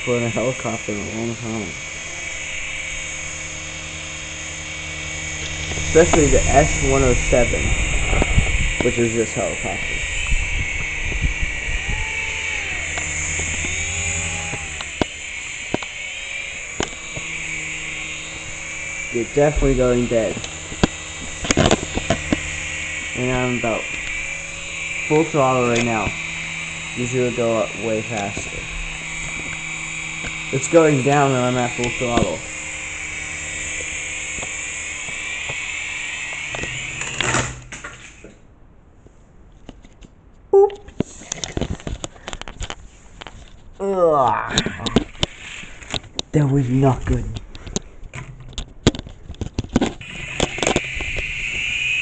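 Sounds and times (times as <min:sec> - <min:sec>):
toy helicopter motors whining: 0:00.0 - 0:38.4, 0:43.8 - 0:48.2, 0:49.3 - 0:52.0
sharp clicks: 0:01.9 - 0:27.0, 0:44.5 - 0:52.0.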